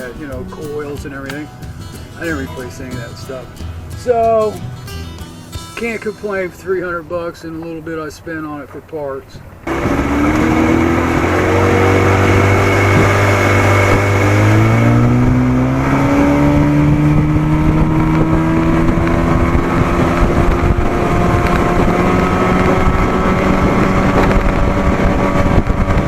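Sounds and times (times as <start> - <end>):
outboard motor throttling up: 9.5 - 26.0.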